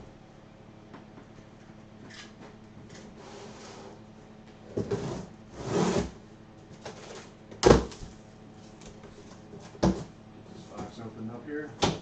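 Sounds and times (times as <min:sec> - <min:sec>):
cardboard box scraping and sliding: 0:04.8 - 0:06.2.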